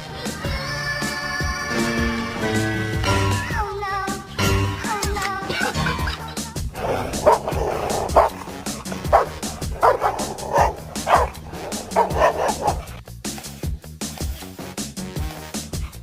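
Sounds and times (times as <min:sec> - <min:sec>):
background music: 0:00.0 - 0:16.0
dog barking: 0:06.8 - 0:13.0.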